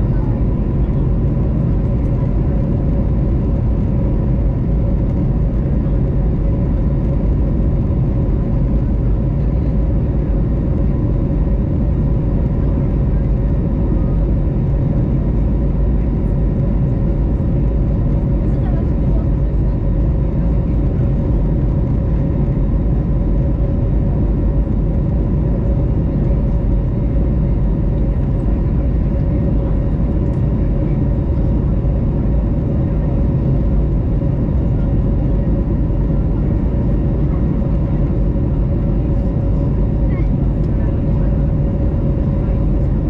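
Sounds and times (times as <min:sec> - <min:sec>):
airplane cabin engine rumble: 0:00.0 - 0:43.0
steady mid-pitched hum: 0:00.0 - 0:43.0.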